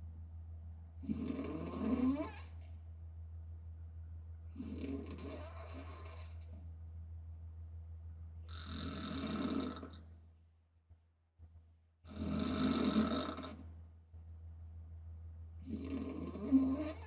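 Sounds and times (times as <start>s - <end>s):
steady low hum: 0.0s - 17.0s
woman snoring: 1.0s - 2.6s, 4.6s - 6.5s, 8.5s - 10.0s, 12.1s - 13.6s, 15.6s - 17.0s.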